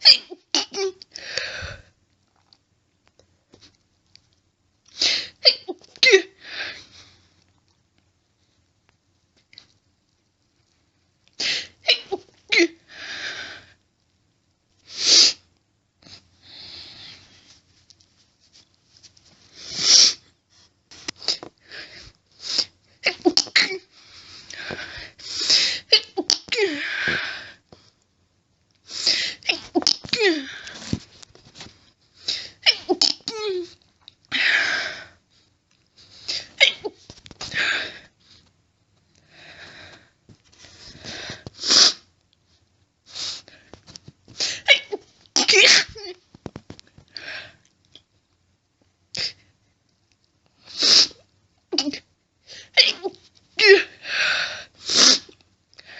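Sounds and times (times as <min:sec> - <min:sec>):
woman sneezing: 0:00.0 - 0:01.0, 0:44.4 - 0:46.1, 0:52.8 - 0:54.0
faint breathy sounds: 0:01.1 - 0:02.0.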